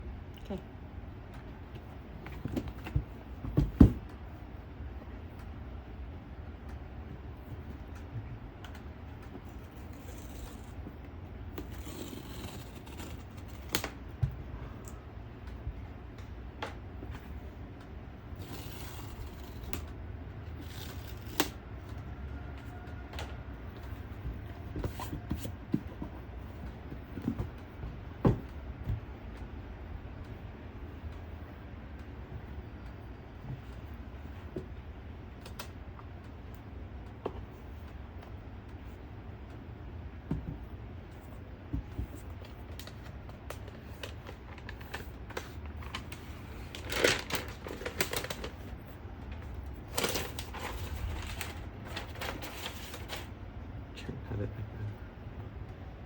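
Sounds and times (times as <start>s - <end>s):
cardboard packaging knocks and scrapes: 2.4s - 4.1s.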